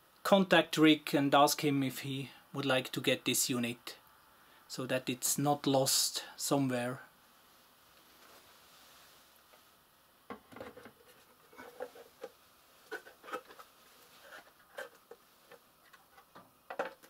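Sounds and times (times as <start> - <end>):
objects tapping and scraping on table: 10.3 - 13.7, 14.3 - 17.0.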